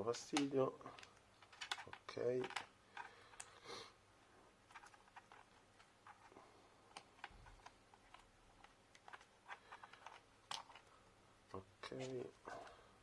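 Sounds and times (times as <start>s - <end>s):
small clicks and taps: 0.3s - 3.6s, 6.9s - 10.9s.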